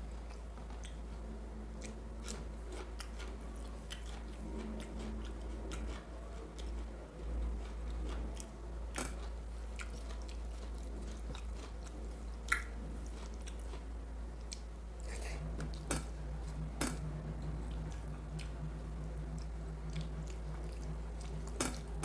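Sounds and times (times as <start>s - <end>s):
person chewing food: 0.0s - 22.0s
steady low hum: 0.0s - 22.0s
wet mouth clicks and smacks: 12.5s - 12.7s.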